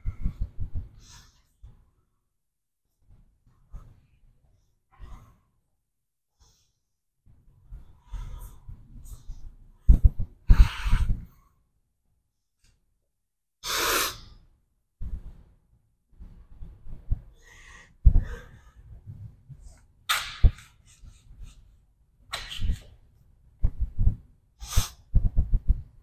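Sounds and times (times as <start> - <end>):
person breathing: 0.0 - 1.6, 7.7 - 11.7, 17.1 - 19.0
sharp burst of breath: 13.6 - 14.3, 24.6 - 25.0.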